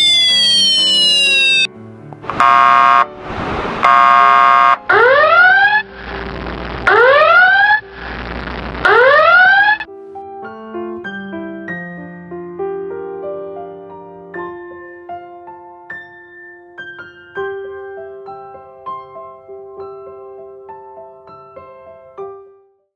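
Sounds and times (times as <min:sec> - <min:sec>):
rising siren whoops: 0:00.0 - 0:01.7, 0:03.8 - 0:05.8, 0:06.9 - 0:07.8, 0:08.9 - 0:09.9
bursts of noise: 0:00.0 - 0:09.9
soft piano music: 0:00.5 - 0:02.4, 0:09.8 - 0:22.8
siren horn blasts: 0:02.3 - 0:03.2, 0:03.8 - 0:05.9, 0:06.9 - 0:07.8, 0:08.8 - 0:09.9.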